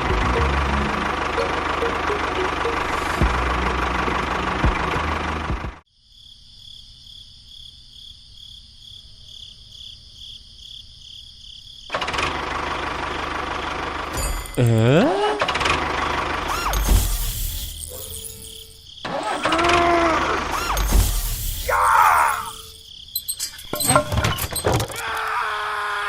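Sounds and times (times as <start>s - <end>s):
rattling machine motor: 11.9s - 14.7s, 15.3s - 24.2s.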